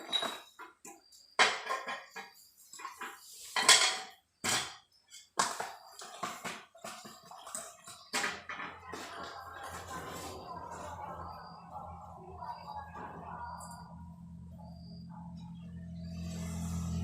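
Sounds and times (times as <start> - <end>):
metal tools clinking and clanking: 0.0 - 4.8.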